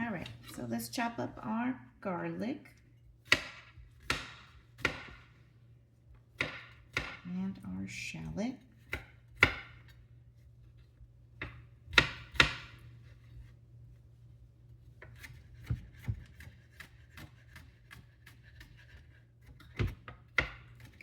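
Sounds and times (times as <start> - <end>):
knife chopping on cutting board: 3.2 - 5.3, 6.4 - 7.3, 8.8 - 10.0, 11.4 - 12.8, 15.0 - 21.0.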